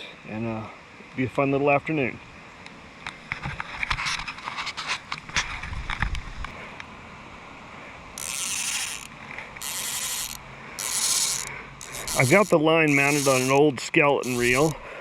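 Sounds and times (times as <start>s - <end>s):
fishing reel ratchet buzzing: 8.2s - 14.8s.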